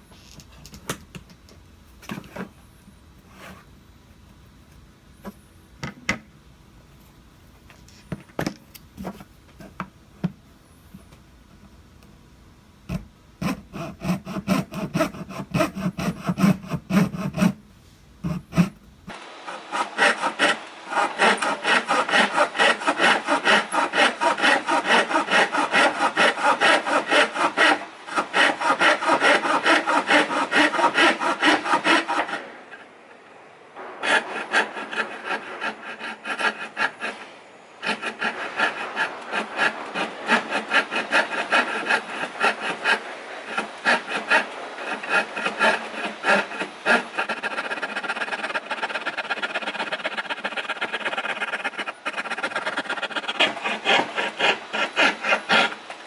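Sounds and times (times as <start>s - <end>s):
hand tool scraping wood: 2.0s - 3.7s, 7.7s - 9.9s, 12.9s - 17.6s, 18.2s - 19.2s, 19.8s - 32.5s, 34.0s - 56.0s.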